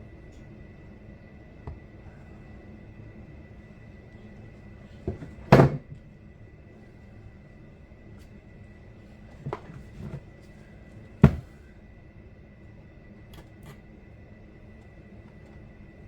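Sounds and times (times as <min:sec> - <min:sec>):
handling knocks: 0:11.2 - 0:11.6.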